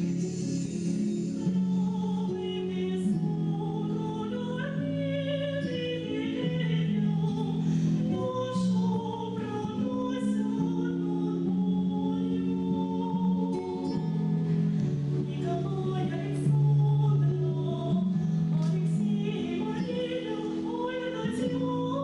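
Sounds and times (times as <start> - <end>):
sustained instrumental accompaniment: 0.0 - 3.6
woman singing slow song: 0.0 - 22.0.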